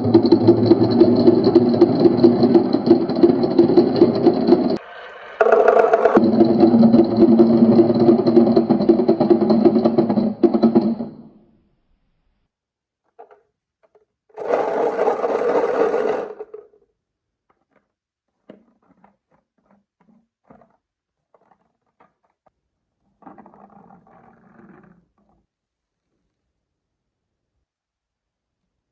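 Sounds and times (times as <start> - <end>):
marbles clicking on wooden track: 0.0 - 4.8, 5.4 - 11.2, 13.2 - 16.7
toy electric motor whirring: 14.4 - 16.5.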